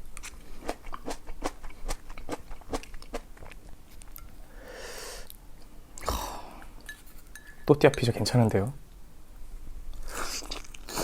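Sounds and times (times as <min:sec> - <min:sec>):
crunchy chewing and biting: 0:00.2 - 0:04.1.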